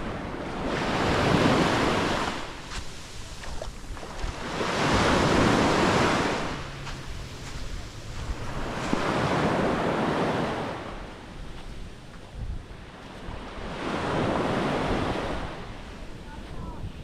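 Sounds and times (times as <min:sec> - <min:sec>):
waves washing on sandy beach: 0:00.0 - 0:17.0
wind rumbling on microphone: 0:00.0 - 0:17.0.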